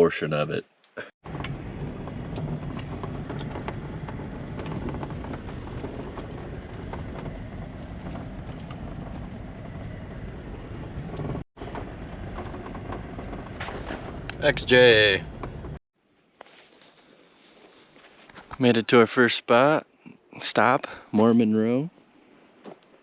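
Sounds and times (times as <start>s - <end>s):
vehicle road and engine rumble: 1.0s - 15.8s
faint rattles: 1.3s - 15.8s.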